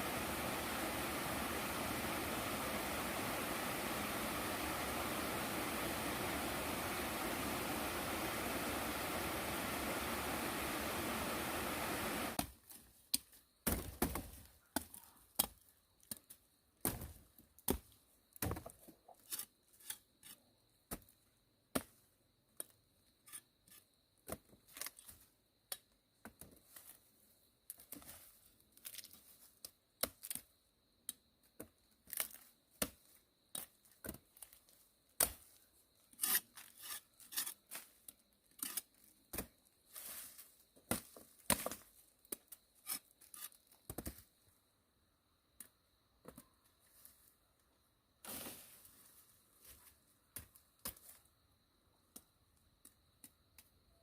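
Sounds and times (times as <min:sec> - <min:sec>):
steady rushing noise: 0:00.0 - 0:12.4.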